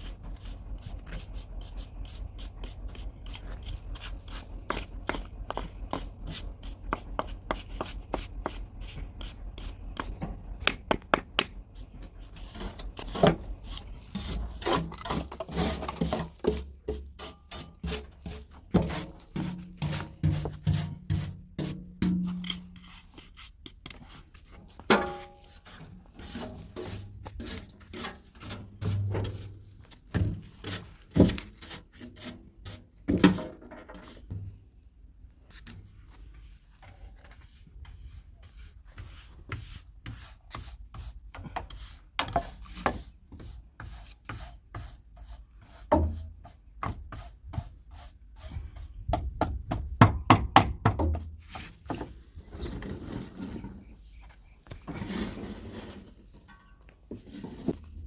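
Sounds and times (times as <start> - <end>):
faint low engine rumble: 0.0 - 44.2, 51.1 - 58.0
excavator knocks and scraping: 4.2 - 9.2, 33.1 - 34.5.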